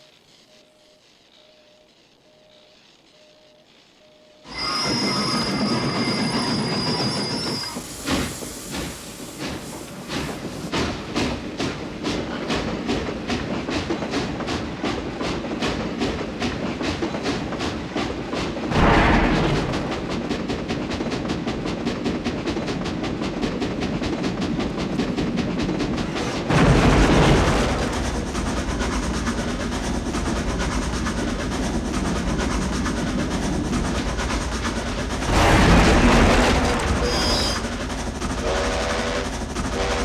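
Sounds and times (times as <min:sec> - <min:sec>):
train rhythmic clatter: 0:00.0 - 0:40.0
whistle-like blasts: 0:04.5 - 0:09.6, 0:35.1 - 0:39.3
loud surge of noise: 0:35.2 - 0:37.8.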